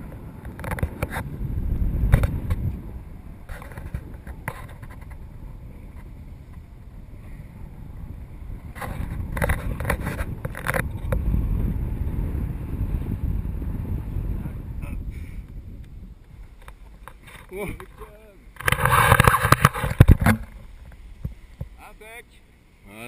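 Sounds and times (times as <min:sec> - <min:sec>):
sharp clicks and rustles: 0:00.0 - 0:01.3, 0:03.4 - 0:05.2, 0:08.7 - 0:11.2, 0:15.8 - 0:21.8
wind rushing over microphone: 0:00.0 - 0:21.8.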